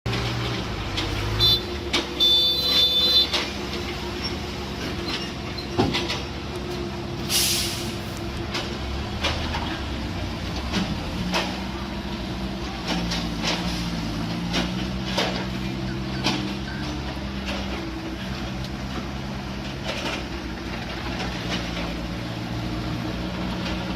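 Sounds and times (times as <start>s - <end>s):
diesel engine hum: 0.1s - 23.9s
air hiss: 7.3s - 8.2s.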